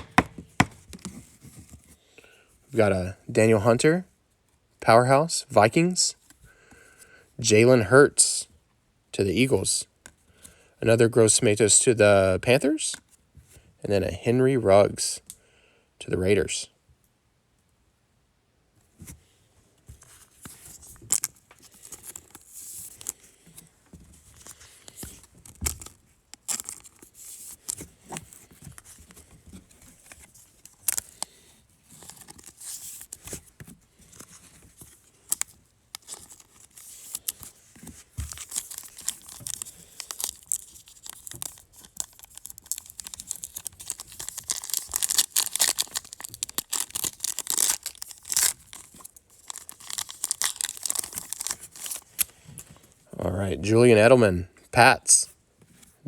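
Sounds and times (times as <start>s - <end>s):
wrappers torn and crinkled: 25.6s - 27.8s, 38.3s - 52.3s.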